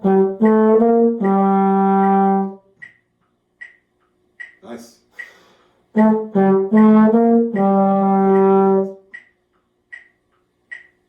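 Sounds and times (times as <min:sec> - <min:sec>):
trombone playing: 0:00.0 - 0:02.8, 0:05.9 - 0:09.1
metronome ticking: 0:00.0 - 0:11.0.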